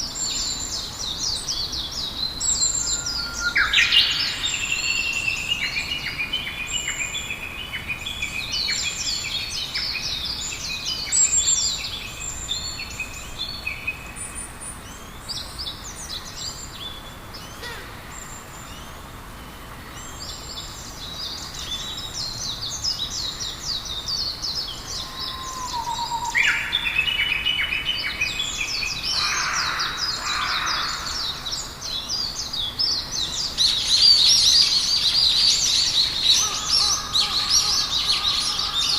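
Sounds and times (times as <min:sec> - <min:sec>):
birds singing and chirping: 0:00.0 - 0:38.9.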